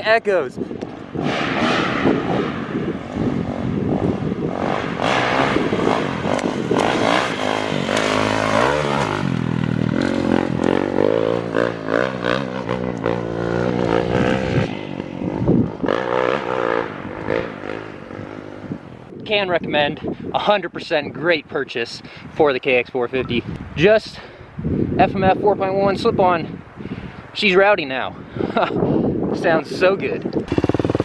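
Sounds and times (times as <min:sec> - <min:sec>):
dirt bike engine revving: 0:01.1 - 0:18.9, 0:30.4 - 0:31.0.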